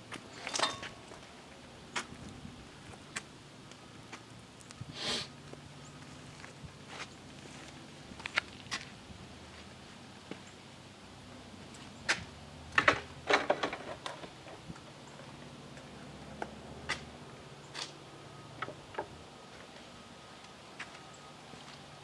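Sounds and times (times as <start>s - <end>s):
metal tools clicking and knocking: 0.3s - 1.2s.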